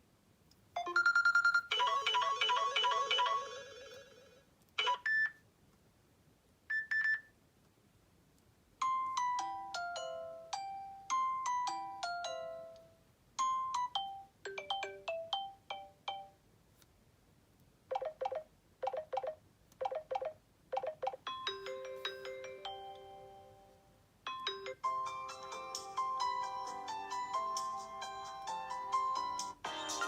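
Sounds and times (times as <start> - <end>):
phone ringtone melodies: 0.8 - 5.3, 8.8 - 12.8, 13.4 - 16.4, 17.9 - 30.0.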